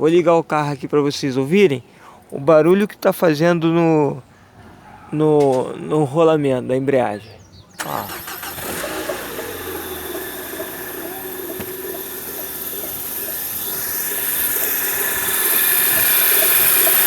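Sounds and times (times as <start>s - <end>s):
engine running: 7.8s - 17.0s
clutch bearing squealing hiss: 8.1s - 17.0s.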